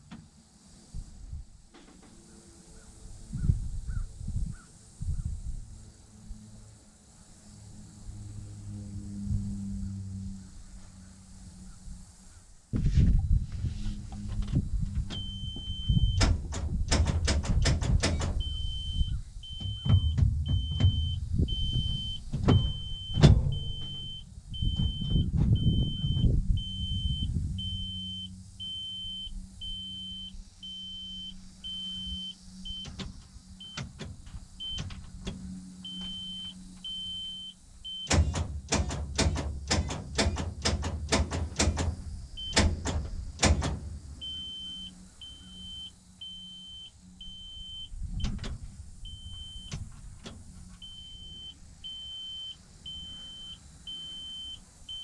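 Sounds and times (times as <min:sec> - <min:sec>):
steady low hum: 0:00.0 - 0:55.0
high warning beep: 0:15.1 - 0:16.3, 0:18.4 - 0:33.0, 0:34.6 - 0:34.9, 0:35.8 - 0:38.2, 0:42.4 - 0:42.7, 0:44.2 - 0:48.4, 0:49.1 - 0:49.7, 0:50.8 - 0:55.0
starter solenoid clicking: 0:37.9 - 0:43.9.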